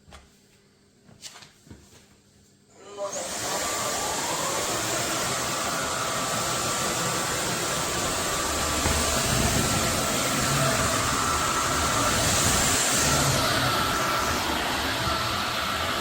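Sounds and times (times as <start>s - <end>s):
wet-dry vacuum mop running: 2.7s - 16.0s
low rumble: 8.5s - 13.7s.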